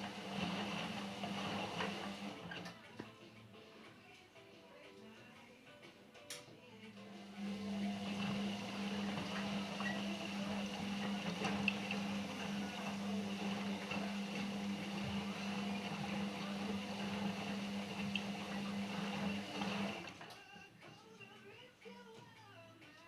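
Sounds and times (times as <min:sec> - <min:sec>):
washing machine hum: 0:00.0 - 0:02.8, 0:07.0 - 0:20.3
water noise: 0:07.4 - 0:20.1.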